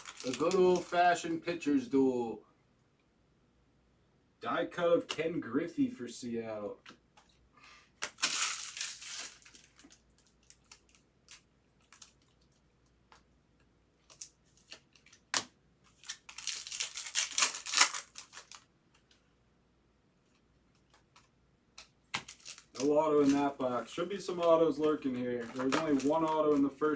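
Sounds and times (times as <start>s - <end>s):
foil wrappers tearing and crinkling: 0.0s - 1.0s, 8.0s - 12.4s, 14.0s - 18.6s, 22.1s - 26.9s.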